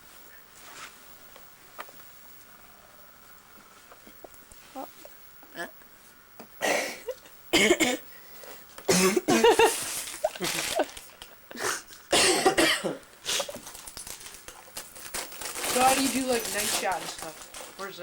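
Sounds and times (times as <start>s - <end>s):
person coughing: 6.6s - 8.0s, 8.9s - 9.8s, 11.5s - 13.6s.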